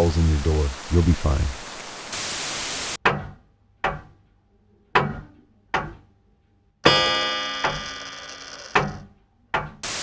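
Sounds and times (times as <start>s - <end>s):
loud ringing chord: 6.8s - 8.7s
struck pitched notes: 6.8s - 8.7s.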